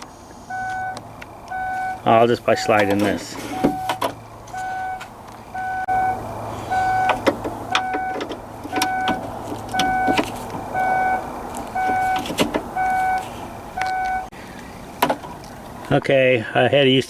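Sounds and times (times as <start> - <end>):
electronic warning chime beeping: 0.5 - 3.0, 3.6 - 5.0, 5.6 - 8.2, 8.8 - 10.2, 10.8 - 11.2, 11.8 - 12.2, 12.8 - 13.2, 13.8 - 14.3.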